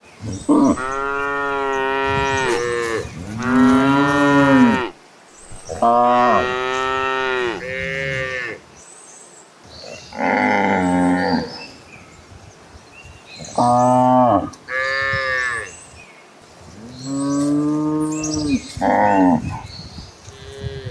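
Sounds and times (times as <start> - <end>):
cattle mooing: 0.5 - 5.0, 5.6 - 8.6.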